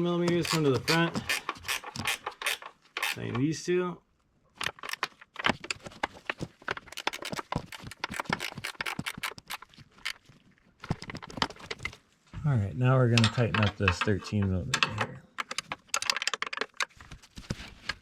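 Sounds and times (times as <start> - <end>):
hand ratchet clicking: 0.4 - 3.2, 6.9 - 9.6.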